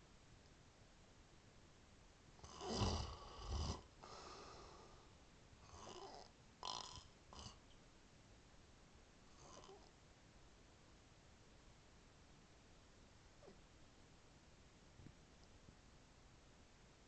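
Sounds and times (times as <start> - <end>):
person snoring: 2.4 - 5.0, 5.7 - 7.6, 9.4 - 9.9
breaths: 4.0 - 5.2.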